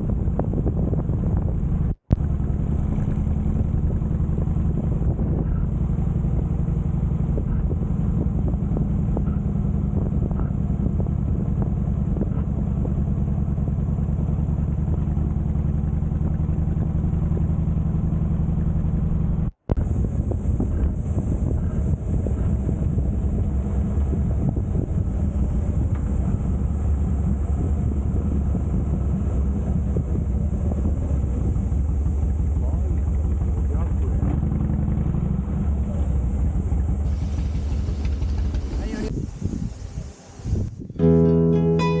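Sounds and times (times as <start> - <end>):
motorcycle engine running: 0.0 - 39.1.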